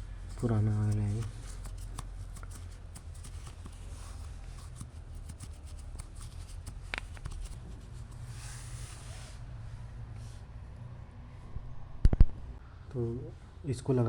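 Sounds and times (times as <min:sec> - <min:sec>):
rubbing noise: 0:00.0 - 0:09.5
steady low hum: 0:00.0 - 0:14.0
light clicks and taps: 0:00.3 - 0:07.7.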